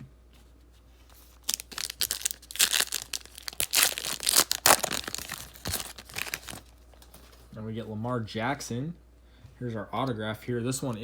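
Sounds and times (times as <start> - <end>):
wrapper tearing and crinkling: 1.4 - 6.7.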